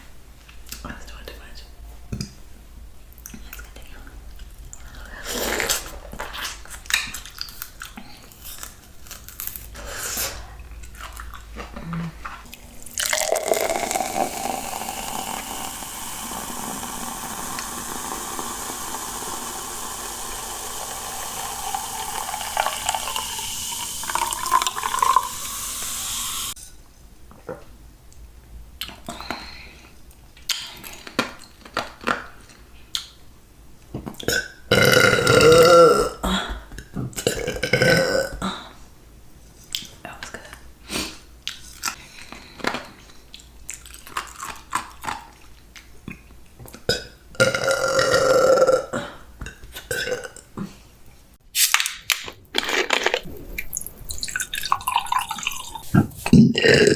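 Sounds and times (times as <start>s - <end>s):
liquid pouring: 12.5s - 26.6s, 52.4s - 56.3s.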